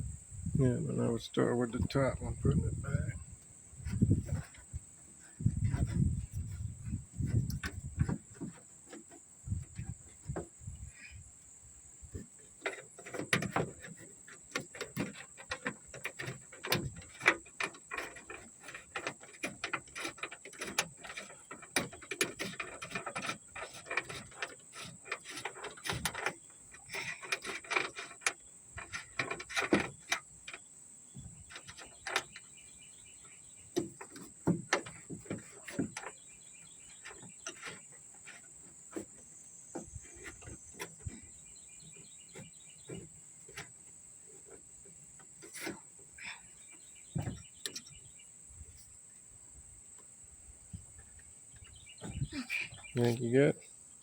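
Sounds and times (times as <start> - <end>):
insects chirring: 0.0 - 54.0
metal clicks and rattles: 12.2 - 30.6.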